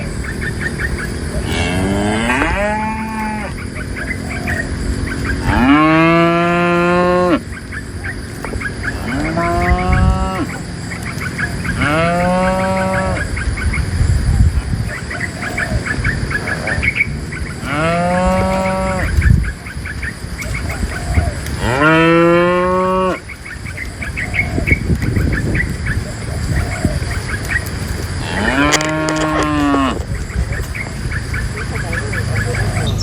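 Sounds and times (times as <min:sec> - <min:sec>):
cows mooing: 0:00.0 - 0:19.8, 0:20.4 - 0:24.6, 0:25.6 - 0:33.0.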